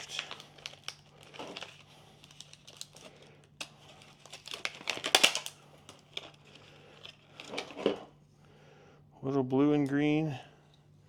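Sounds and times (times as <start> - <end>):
packaging crinkling and rustling: 0.0 - 8.1.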